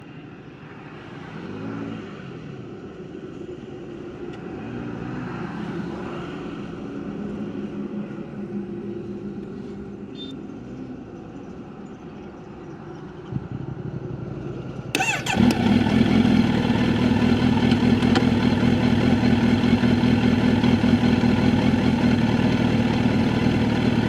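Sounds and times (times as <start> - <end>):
vehicle engines running: 13.8 - 24.0.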